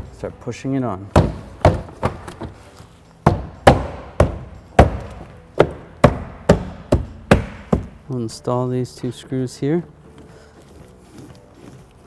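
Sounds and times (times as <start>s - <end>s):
trim panel clips knocking: 1.2s - 2.6s, 3.3s - 8.1s.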